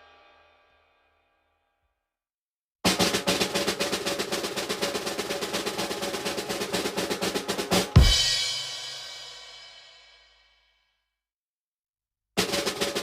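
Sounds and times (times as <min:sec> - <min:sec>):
snare drum roll: 0:02.9 - 0:10.0, 0:12.4 - 0:13.0
bass drum thump: 0:08.0 - 0:08.5
cymbal crash: 0:08.0 - 0:10.1.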